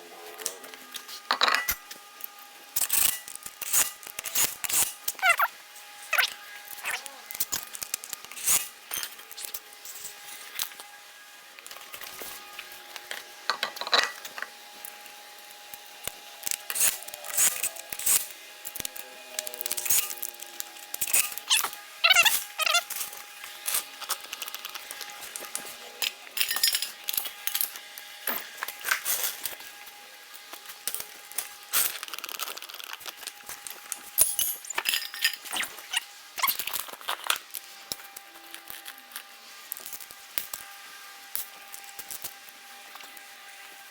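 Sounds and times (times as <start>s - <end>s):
metal tools clinking: 1.3s - 1.8s, 2.8s - 5.2s, 8.3s - 10.7s, 13.5s - 14.5s, 21.0s - 24.4s, 25.5s - 29.6s, 33.8s - 35.7s.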